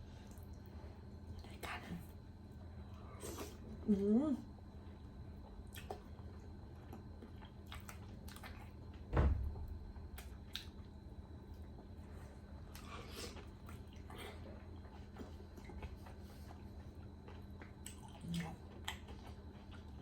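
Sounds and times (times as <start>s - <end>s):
person chewing food: 4.8s - 9.0s, 10.0s - 20.0s
dull low thump: 9.1s - 9.9s.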